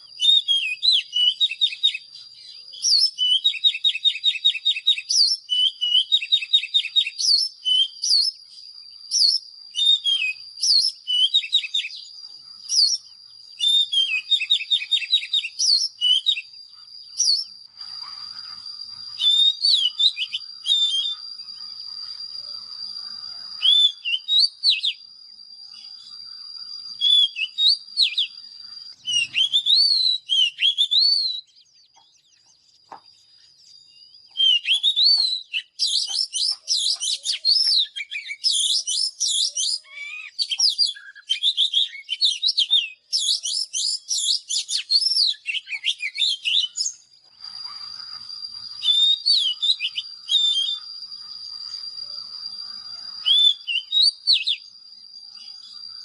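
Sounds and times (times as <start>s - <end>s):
bird singing whistled phrases: 0.0s - 56.0s.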